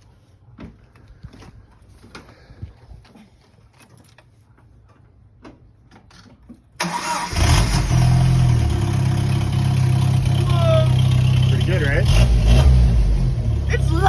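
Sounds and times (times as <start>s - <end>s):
car engine cranking and running: 6.8s - 14.0s.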